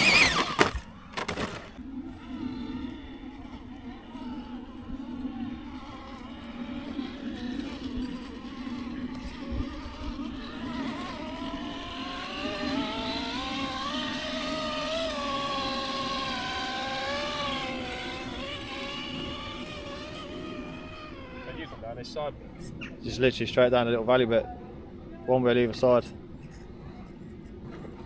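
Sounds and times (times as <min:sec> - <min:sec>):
electric motor and gearbox whining: 0:00.0 - 0:22.2.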